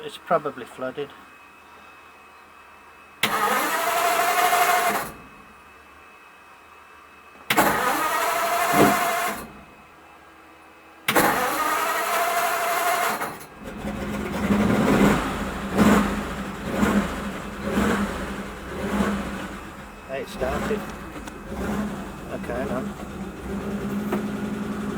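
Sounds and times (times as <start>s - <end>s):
engine revving: 3.2s - 5.3s, 7.5s - 9.6s, 11.1s - 24.9s
starter cranking engine: 3.2s - 5.3s, 7.5s - 9.6s, 11.1s - 24.9s.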